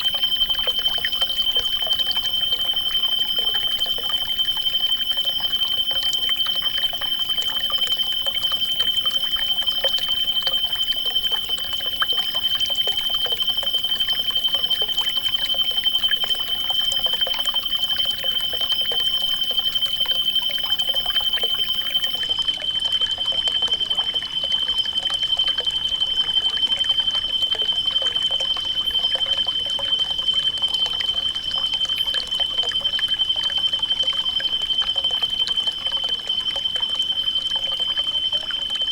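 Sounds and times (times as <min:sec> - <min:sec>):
small water splashes: 0:00.0 - 0:22.2
water trickling and pouring: 0:00.0 - 0:22.2.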